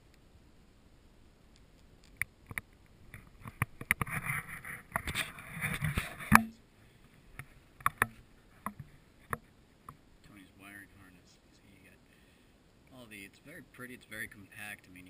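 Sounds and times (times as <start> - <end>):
rustling and scraping: 1.7 - 10.0.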